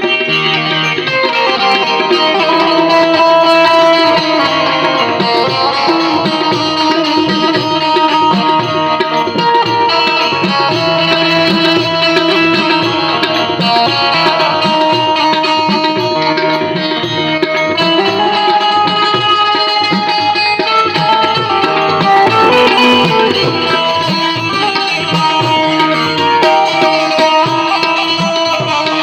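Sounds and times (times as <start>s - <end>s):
banjo melody: 0.0s - 29.0s
tabla rhythm: 0.0s - 29.0s.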